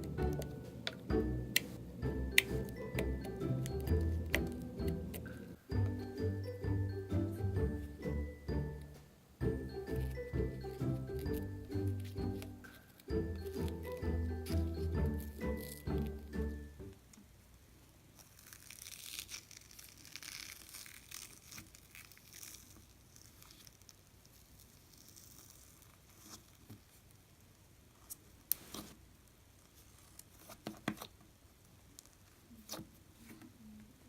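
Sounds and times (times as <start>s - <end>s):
slime crackling and tearing: 10.7s - 16.2s, 18.1s - 26.7s.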